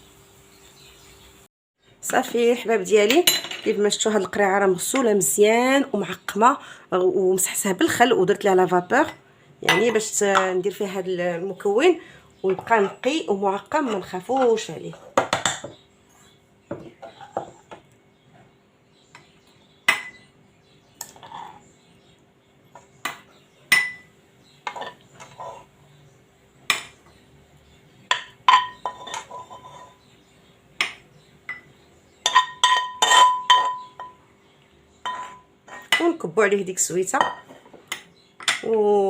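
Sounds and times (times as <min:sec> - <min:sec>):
utensils tapping cooking pan: 0:28.1 - 0:30.0, 0:30.8 - 0:34.2, 0:35.0 - 0:36.1
metal utensils clinking on glass jar: 0:32.2 - 0:34.2.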